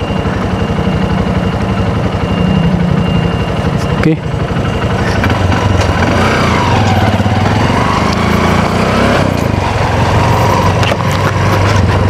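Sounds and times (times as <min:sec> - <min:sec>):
small vehicle engine running: 0:00.0 - 0:12.0.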